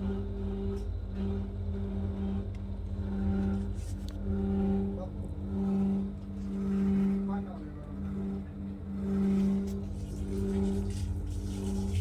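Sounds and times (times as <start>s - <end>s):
freezer compressor humming: 8.3s - 12.0s.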